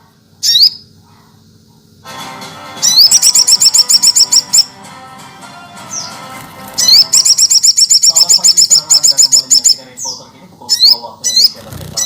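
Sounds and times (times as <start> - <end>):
bird singing: 0.4 - 1.4, 2.8 - 4.8, 5.6 - 12.0
steady background music: 2.0 - 7.9.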